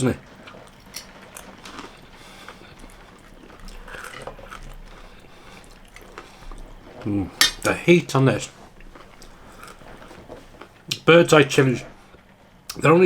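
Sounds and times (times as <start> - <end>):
person chewing: 0.2 - 7.9, 8.5 - 11.1.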